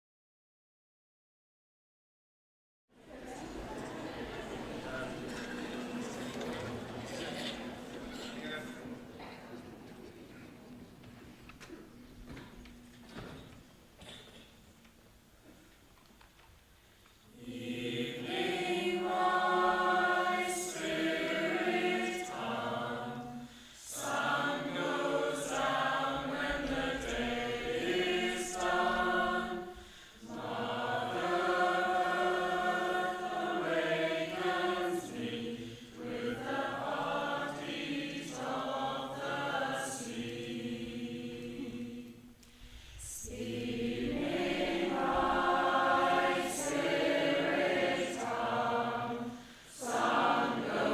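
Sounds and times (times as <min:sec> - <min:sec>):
women's choir singing: 0:03.0 - 0:09.5, 0:17.3 - 0:50.9.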